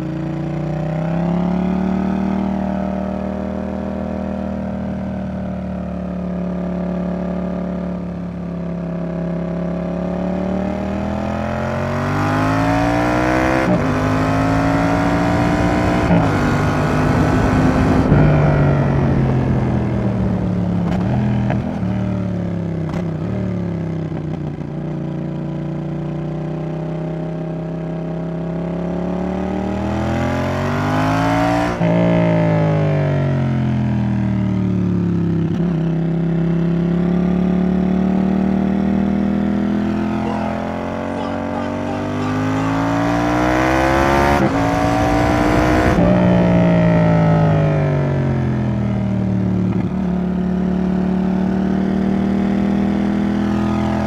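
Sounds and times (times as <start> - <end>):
motorcycle engine revving: 10.1 - 24.4, 36.3 - 48.4.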